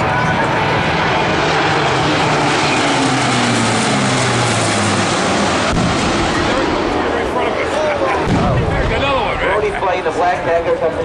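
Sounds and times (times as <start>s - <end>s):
military aircraft engine rushing: 0.0s - 11.0s.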